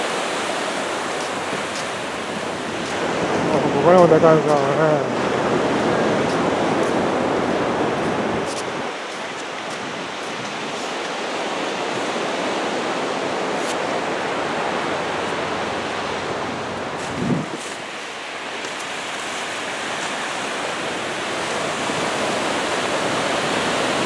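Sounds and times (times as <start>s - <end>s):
waves washing onto sand: 0.0s - 24.0s.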